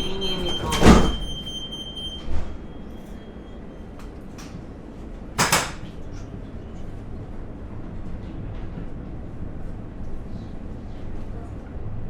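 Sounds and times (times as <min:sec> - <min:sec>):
train doors clunking shut: 0:00.0 - 0:03.3, 0:05.4 - 0:06.0
low hum of standing train: 0:00.0 - 0:12.0.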